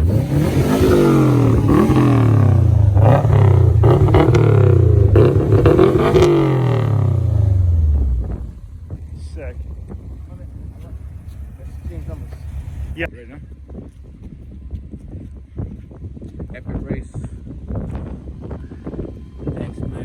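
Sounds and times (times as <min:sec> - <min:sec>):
turbocharged car engine pulling hard: 0:00.0 - 0:13.1.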